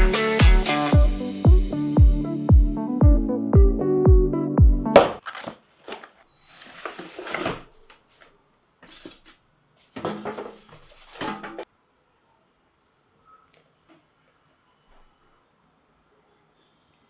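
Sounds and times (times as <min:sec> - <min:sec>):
electronic music with steady beat: 0:00.0 - 0:05.0
scraping rustle: 0:05.2 - 0:11.7
clatter at workbench: 0:08.8 - 0:11.6.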